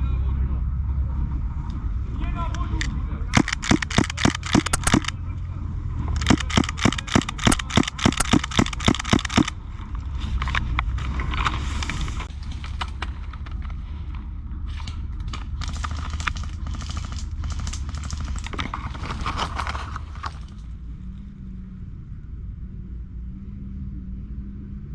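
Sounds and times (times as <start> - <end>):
airsoft guns firing: 2.5 - 5.2, 6.2 - 9.6, 15.5 - 19.2.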